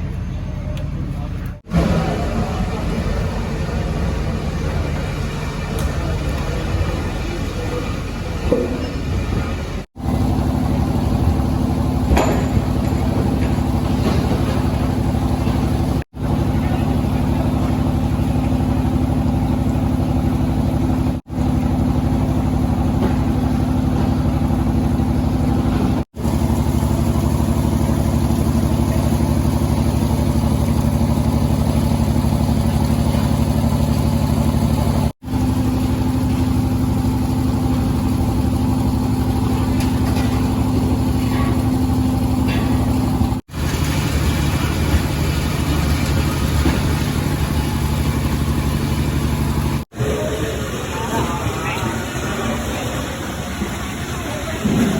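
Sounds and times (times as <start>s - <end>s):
boat engine droning: 0.0s - 54.9s.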